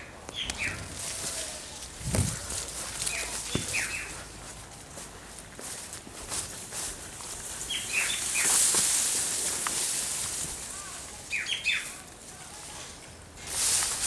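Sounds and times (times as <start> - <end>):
bird chirping: 0.0 - 1.4, 3.0 - 4.3, 7.7 - 8.7, 10.7 - 12.1
rustling hiss: 0.0 - 14.0.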